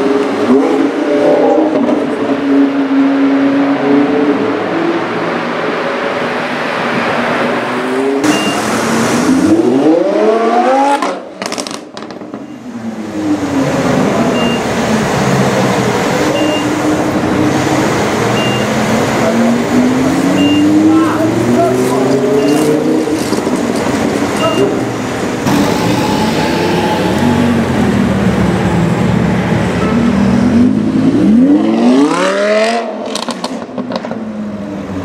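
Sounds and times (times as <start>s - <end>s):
sports car engine revving: 13.1s - 34.2s.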